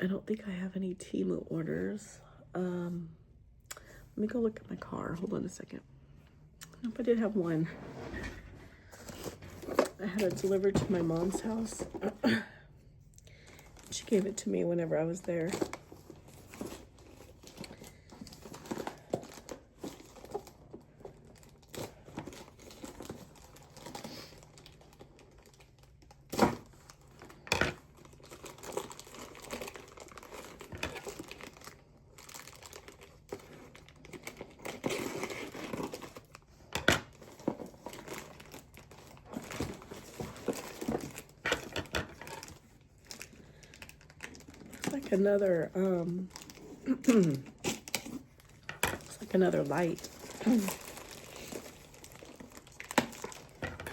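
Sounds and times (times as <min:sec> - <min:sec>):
packaging crinkling and tearing: 0:15.1 - 0:45.2, 0:45.8 - 0:53.9.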